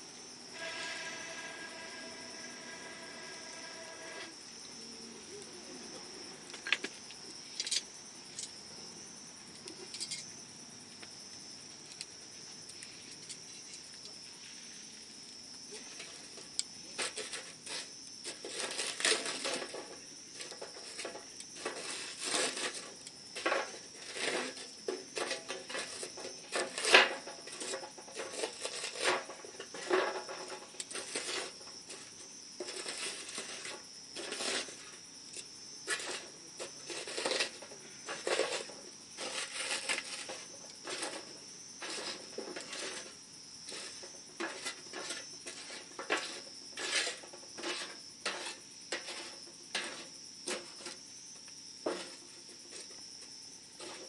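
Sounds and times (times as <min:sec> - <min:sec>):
high insect trill: 0:00.0 - 0:54.0
campfire crackling and popping: 0:06.4 - 0:16.9.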